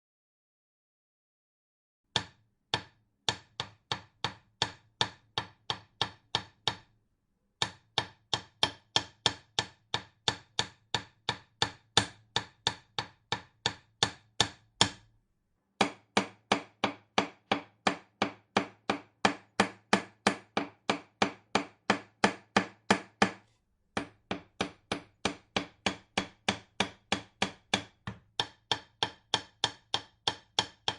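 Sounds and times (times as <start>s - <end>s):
hammer driving a nail: 2.1s - 6.9s, 7.6s - 15.1s, 15.8s - 23.4s, 24.0s - 30.9s.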